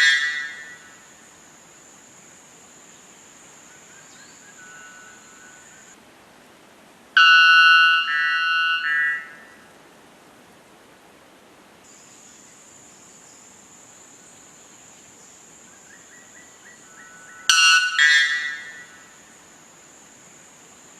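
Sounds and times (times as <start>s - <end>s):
insects trilling: 0.0s - 6.0s, 7.2s - 9.8s, 11.8s - 20.9s
background hiss: 0.0s - 20.9s
loud two-part pitched call: 7.2s - 9.3s.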